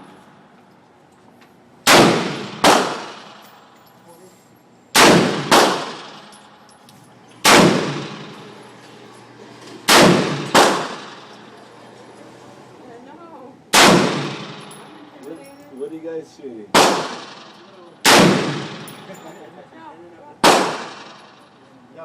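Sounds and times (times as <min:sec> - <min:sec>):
rifle shots echoing: 0:01.8 - 0:03.5, 0:05.0 - 0:06.4, 0:07.4 - 0:08.5, 0:09.8 - 0:11.5, 0:13.7 - 0:15.0, 0:16.7 - 0:19.2, 0:20.4 - 0:21.6.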